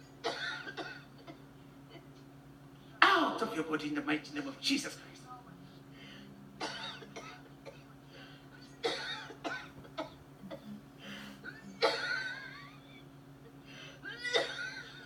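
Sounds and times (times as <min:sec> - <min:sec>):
woman coughing and retching: 0:00.2 - 0:02.1, 0:06.6 - 0:07.9, 0:08.8 - 0:10.6, 0:11.5 - 0:12.6, 0:14.1 - 0:15.0.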